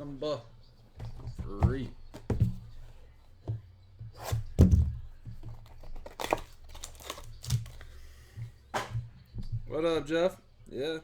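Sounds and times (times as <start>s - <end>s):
knocks on a box: 1.0s - 2.8s.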